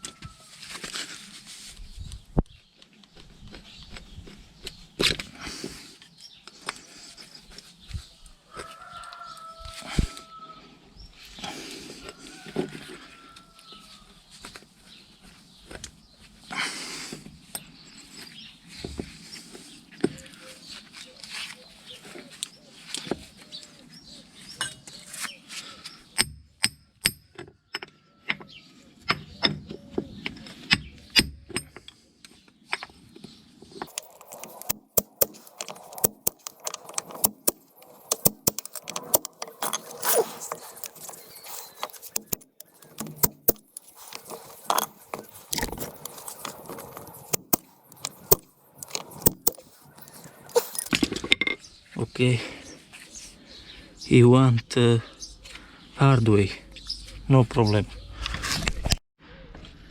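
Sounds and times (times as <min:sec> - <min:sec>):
metal tools clinking and knocking: 0:33.9 - 0:51.6.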